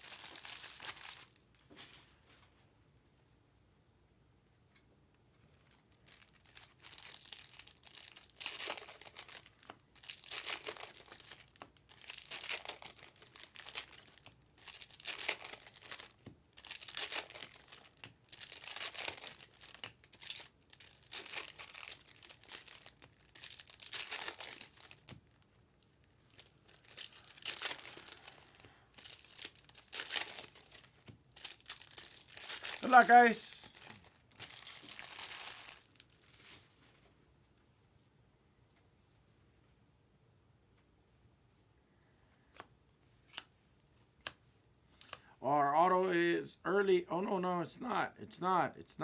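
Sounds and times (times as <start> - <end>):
foil wrappers tearing and crinkling: 0.0 - 2.1, 5.6 - 25.5, 26.3 - 36.8.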